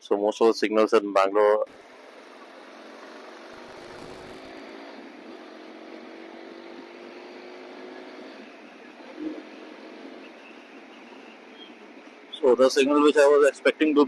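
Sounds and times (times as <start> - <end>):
idling vehicle engines: 1.6 - 7.3, 8.3 - 14.0
faint engine hum: 1.6 - 14.0.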